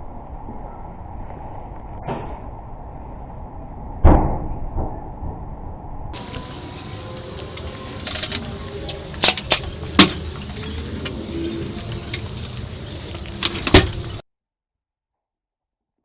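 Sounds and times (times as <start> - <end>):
steady low rumble: 0.0 - 14.2.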